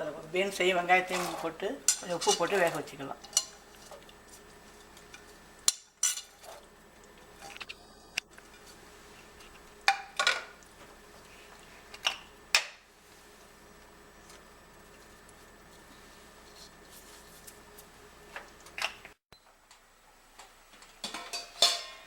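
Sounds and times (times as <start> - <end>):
metal utensils clinking on pot: 1.1 - 4.0, 5.7 - 6.6, 21.0 - 22.0.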